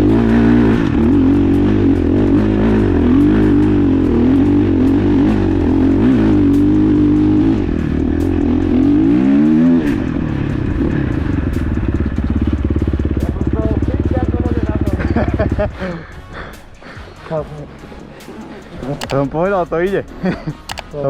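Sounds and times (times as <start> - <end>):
motorcycle engine revving: 0.0 - 15.6.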